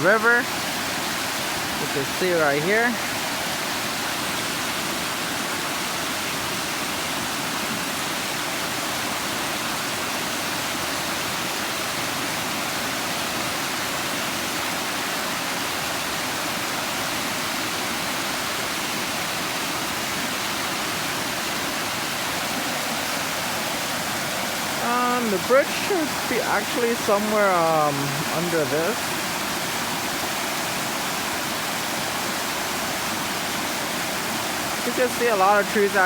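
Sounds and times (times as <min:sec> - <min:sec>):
floodwater rushing in creek: 0:00.0 - 0:36.0.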